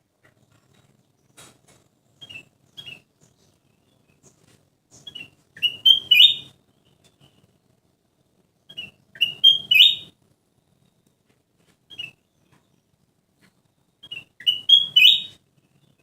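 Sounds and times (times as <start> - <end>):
bulbul singing: 5.0 - 6.5, 8.7 - 10.1, 14.0 - 15.4.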